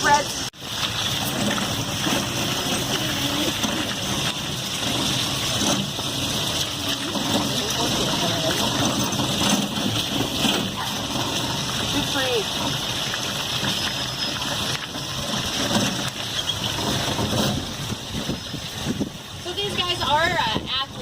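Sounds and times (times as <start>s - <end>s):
wheeled cart rolling: 0.0s - 21.0s.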